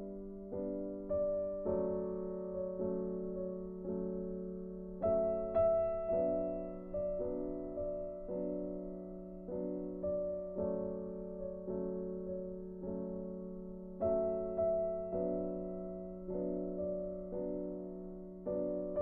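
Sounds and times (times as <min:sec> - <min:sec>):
soft slow piano melody: 0:00.0 - 0:19.0.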